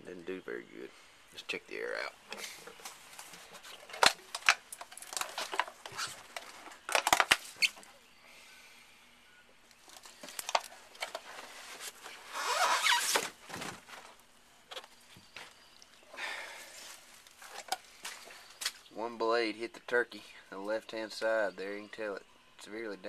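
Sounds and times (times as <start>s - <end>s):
rustling: 9.8s - 18.8s.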